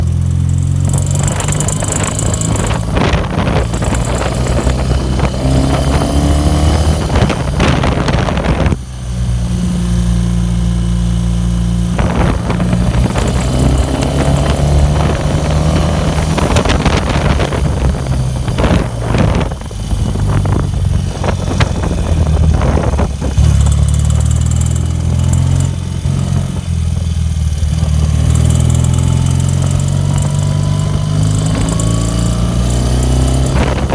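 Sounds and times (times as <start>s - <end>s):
motorcycle engine revving: 0.0s - 33.9s
valve spring noise: 0.3s - 5.9s.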